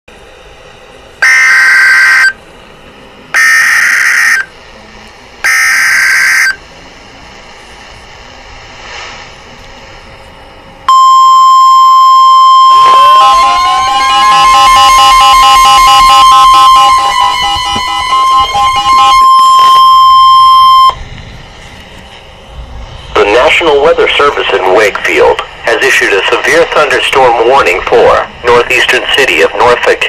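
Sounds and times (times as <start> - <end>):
steady single-pitch alert tone: 1.2 - 2.4, 3.4 - 4.6, 5.4 - 6.6, 10.9 - 21.0
warbling digital data tones: 10.9 - 21.0.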